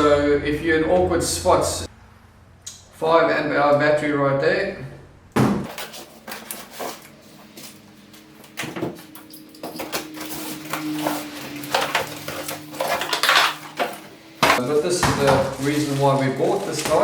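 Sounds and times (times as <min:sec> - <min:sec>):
tools and cases clattering: 0:08.2 - 0:17.0.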